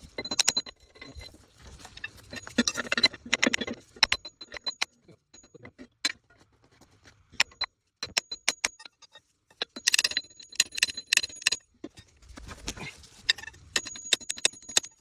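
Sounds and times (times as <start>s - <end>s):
sharp metallic clicks and clinks: 7.4s - 11.6s.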